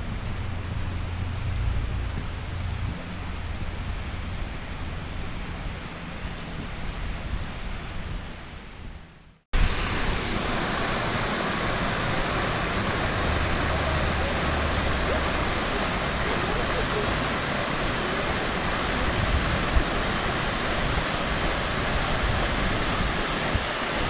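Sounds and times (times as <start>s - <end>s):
low rumble: 0.0s - 8.0s
waterfall rushing: 9.6s - 24.0s.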